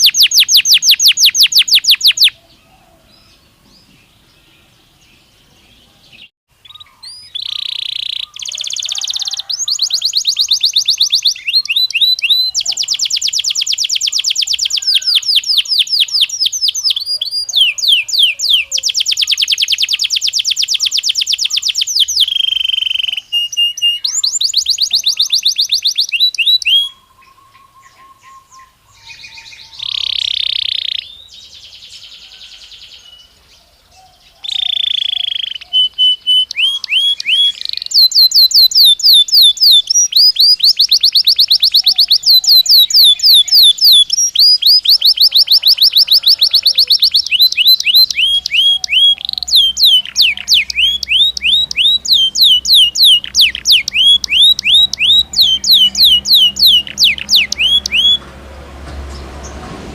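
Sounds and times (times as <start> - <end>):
canary singing trills: 0.0 - 58.3.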